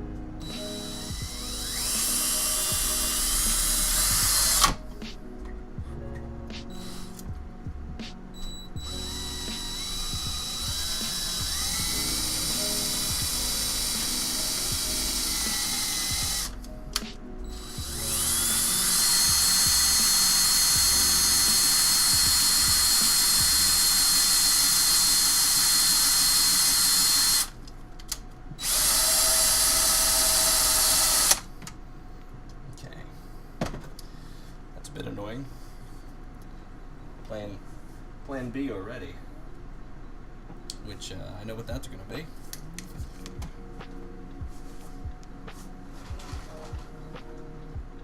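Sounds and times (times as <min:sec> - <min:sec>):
power drill whining: 0:00.4 - 0:04.8, 0:06.8 - 0:07.2, 0:08.7 - 0:16.6, 0:17.6 - 0:27.5, 0:28.6 - 0:31.4.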